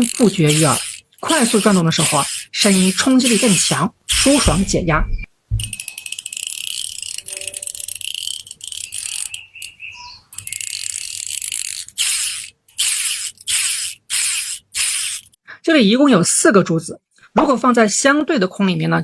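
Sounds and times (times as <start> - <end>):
fidget spinner ratchet clicking: 0.0 - 4.7, 5.6 - 15.4.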